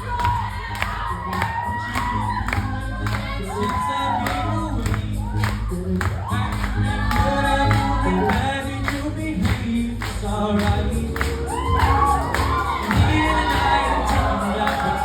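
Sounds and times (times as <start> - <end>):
bass line and beat: 0.0 - 15.0
voices singing in harmony: 0.0 - 15.0.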